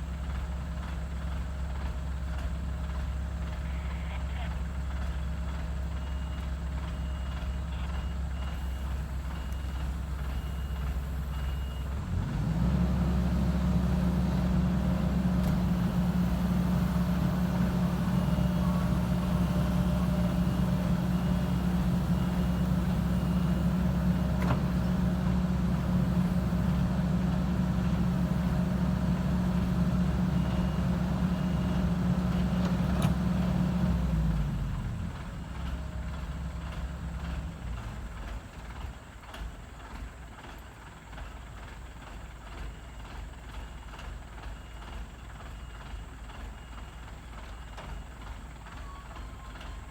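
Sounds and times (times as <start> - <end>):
excavator diesel engine revving: 4.6 - 40.9
faint beeping alarm: 5.9 - 12.0, 15.2 - 32.8, 44.6 - 49.9.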